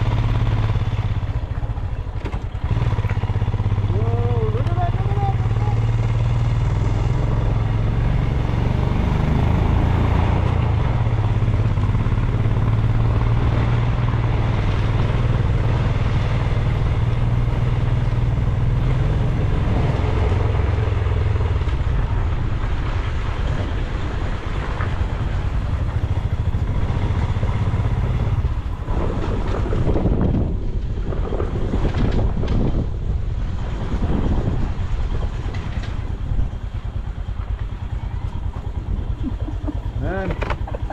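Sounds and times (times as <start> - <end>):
motorcycle engine running: 0.0 - 40.9
road and wind noise: 0.0 - 40.9.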